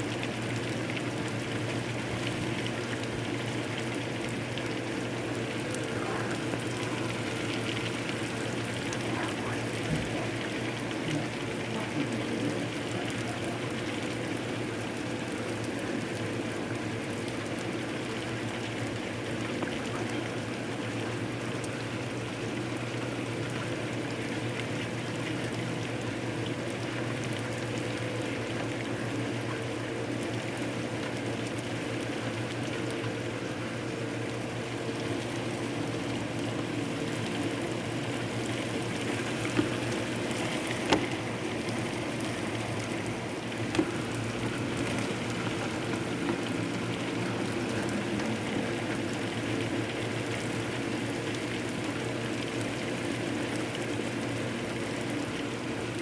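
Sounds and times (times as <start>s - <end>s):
heavy rain pouring: 5.4s - 14.7s, 35.0s - 51.3s.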